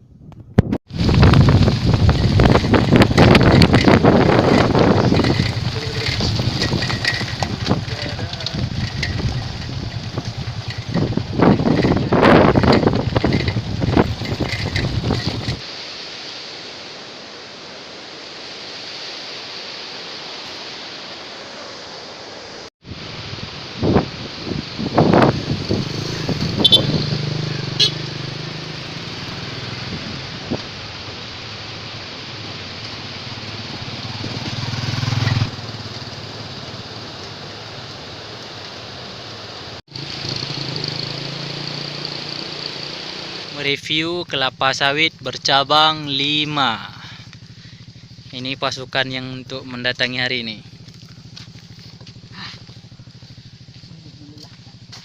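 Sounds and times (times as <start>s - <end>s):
wind buffeting microphone: 0.1s - 15.6s, 22.9s - 31.4s
steady rushing noise: 0.6s - 53.6s
motor engine running: 0.9s - 15.6s, 24.0s - 38.3s, 39.9s - 43.6s, 45.0s - 55.0s
waterfall rushing: 15.6s - 26.3s, 28.3s - 41.2s.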